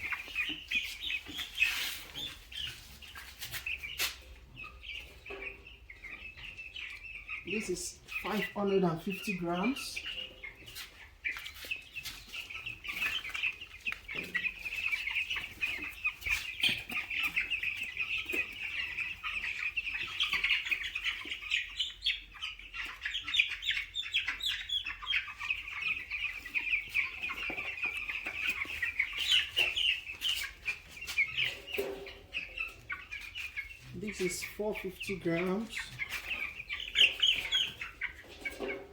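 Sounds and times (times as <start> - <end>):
chicks peeping: 0.0 - 38.9.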